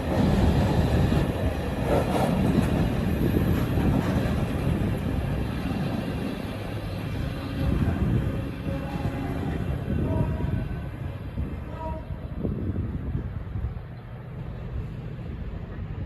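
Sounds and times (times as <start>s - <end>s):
locomotive engine rumbling: 0.0s - 16.0s.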